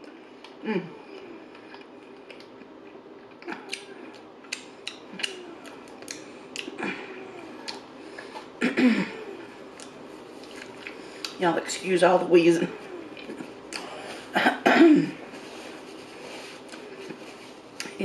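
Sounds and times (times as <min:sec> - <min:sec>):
chewing with wet mouth clicks: 0:00.0 - 0:06.8, 0:07.6 - 0:08.5, 0:09.7 - 0:11.4.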